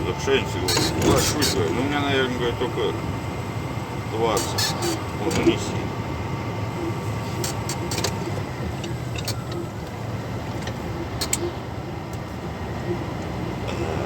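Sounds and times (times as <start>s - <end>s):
engine and road rumble in cabin: 0.0s - 14.0s.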